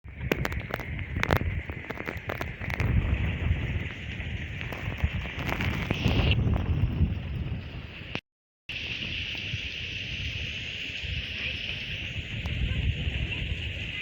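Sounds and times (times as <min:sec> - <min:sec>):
wind buffeting microphone: 0:00.0 - 0:14.0
hailstones striking hard surfaces: 0:00.1 - 0:05.9
rain hiss: 0:00.1 - 0:14.0.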